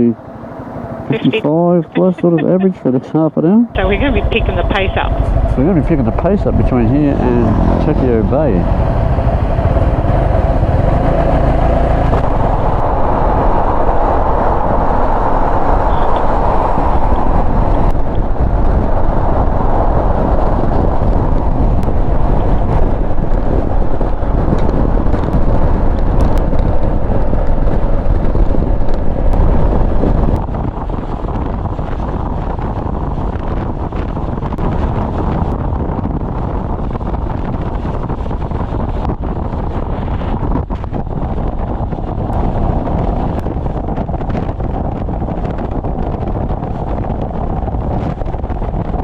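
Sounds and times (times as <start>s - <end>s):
wind rush and road noise: 0.0s - 49.0s
faint motorcycle engine: 3.8s - 12.8s.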